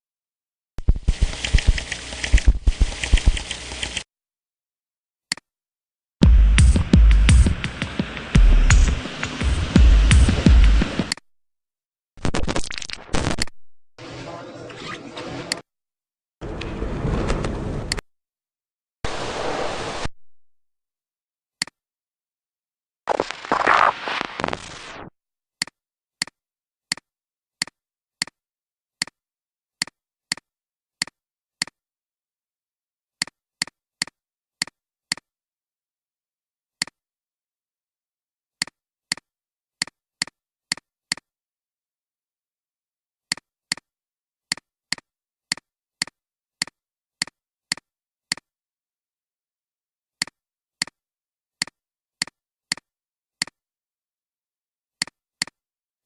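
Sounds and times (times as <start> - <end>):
computer mouse clicking: 0.8 - 4.1.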